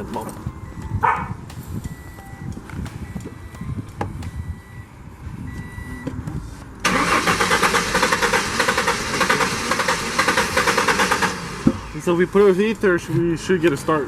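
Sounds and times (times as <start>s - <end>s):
electronic warning beep: 0.0s - 6.2s
car engine cranking on starter: 6.8s - 12.3s.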